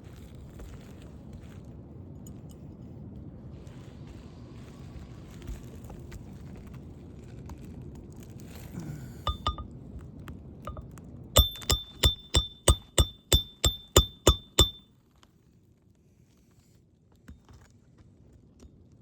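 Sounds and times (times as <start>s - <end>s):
hammer blows on nail: 11.4s - 14.8s.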